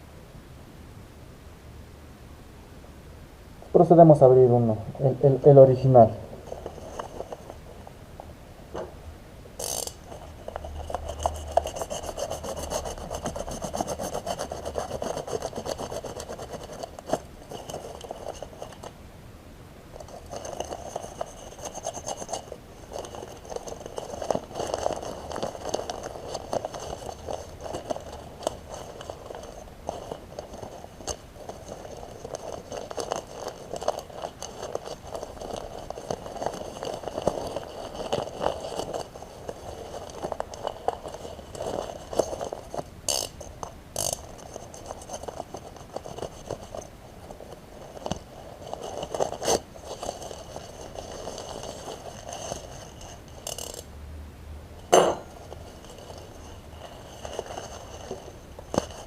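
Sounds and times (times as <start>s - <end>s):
cardboard and plastic packaging handled: 6.4s - 7.7s, 9.6s - 19.0s, 20.0s - 53.8s, 55.4s - 59.0s
sharp loud knock: 54.9s - 55.3s.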